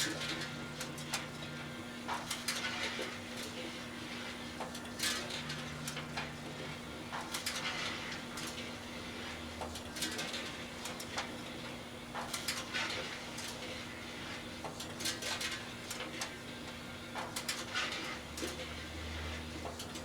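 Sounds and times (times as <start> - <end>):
microwave oven humming: 0.0 - 20.0.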